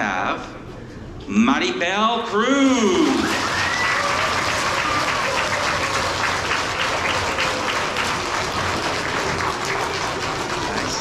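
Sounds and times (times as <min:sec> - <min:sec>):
children applauding in a hall: 0:03.0 - 0:11.0.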